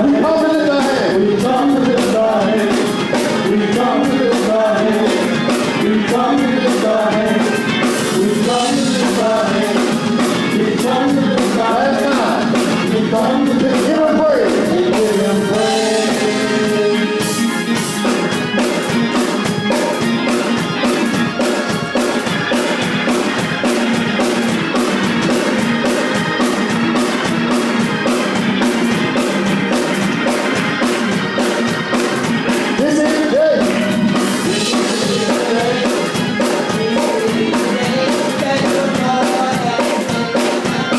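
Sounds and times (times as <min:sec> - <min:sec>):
singing: 0:00.0 - 0:17.4, 0:34.4 - 0:40.9
drums keeping steady beat: 0:00.0 - 0:40.9.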